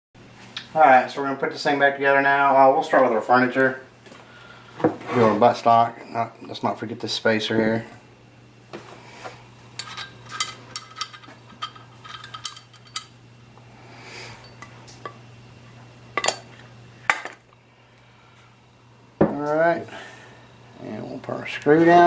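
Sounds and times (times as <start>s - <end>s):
steady low hum: 0.2s - 22.0s
gun parts clicking and clinking: 9.8s - 13.1s.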